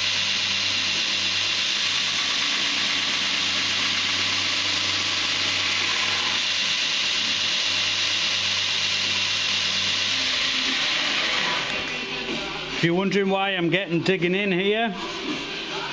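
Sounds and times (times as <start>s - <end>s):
grinder motor hum: 0.0s - 12.2s.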